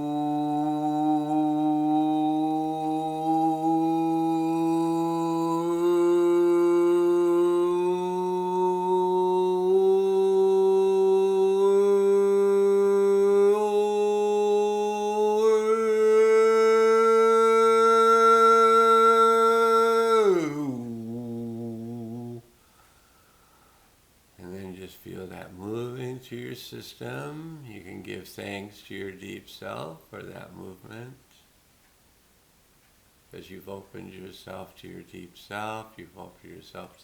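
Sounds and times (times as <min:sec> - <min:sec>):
man toning long vowel: 0:00.0 - 0:22.5.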